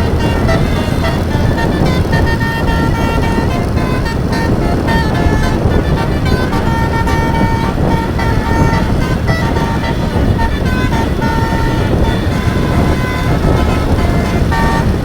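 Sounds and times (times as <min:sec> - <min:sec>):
bus horn playing a tune: 0:00.0 - 0:15.0
engine and road noise: 0:00.0 - 0:15.0.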